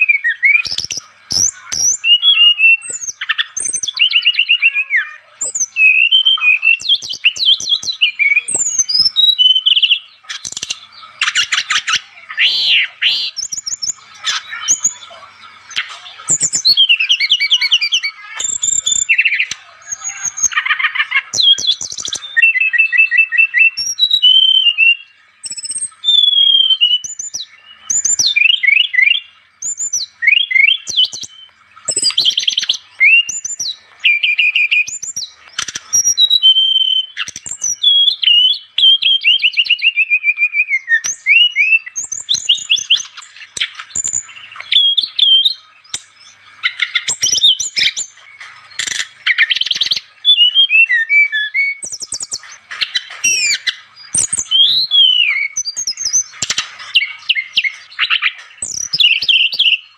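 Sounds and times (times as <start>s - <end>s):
bird singing whistled trills: 0.0s - 59.9s.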